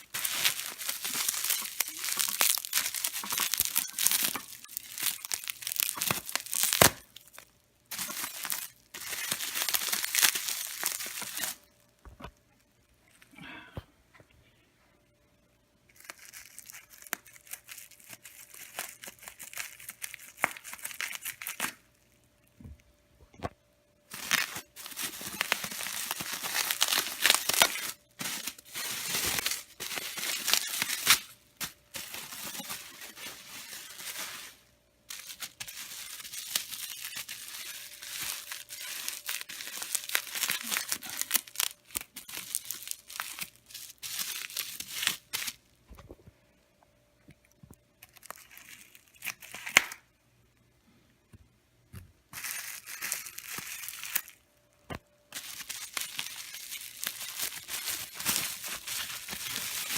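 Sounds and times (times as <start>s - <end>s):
packing material crumpled and torn: 0.0s - 11.7s, 15.9s - 22.0s, 24.1s - 45.6s, 48.0s - 50.0s, 52.3s - 54.4s, 55.3s - 59.9s.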